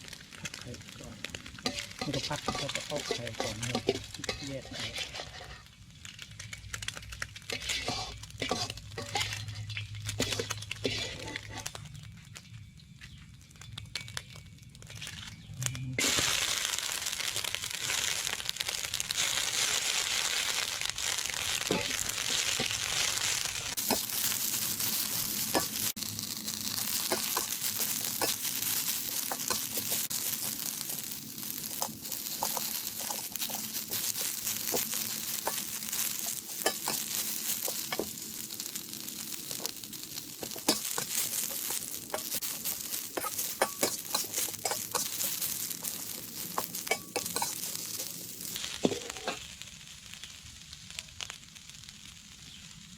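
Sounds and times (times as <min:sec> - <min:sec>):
noodles sizzling in hot oil: 0:00.0 - 0:52.9
spatula scraping and tapping pan: 0:01.6 - 0:05.7, 0:07.5 - 0:11.8, 0:23.8 - 0:26.0, 0:26.9 - 0:38.7, 0:39.5 - 0:49.5.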